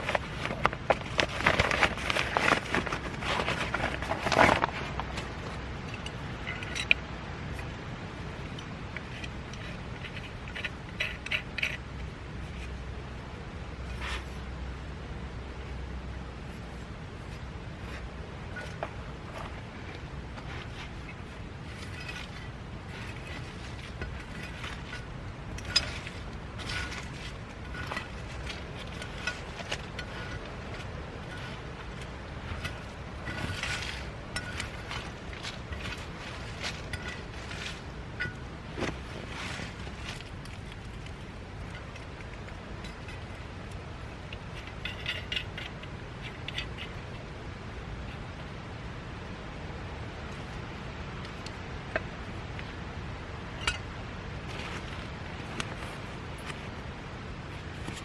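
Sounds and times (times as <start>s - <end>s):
steady low rumble: 0.0s - 58.0s
light clicks and clinks: 17.3s - 47.3s
light metallic clinks: 40.0s - 47.3s.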